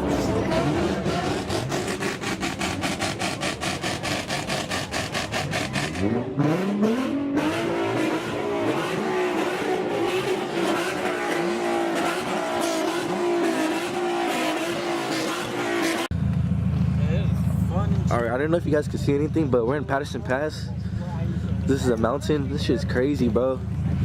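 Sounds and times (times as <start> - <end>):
car engine revving: 0.0 - 24.0.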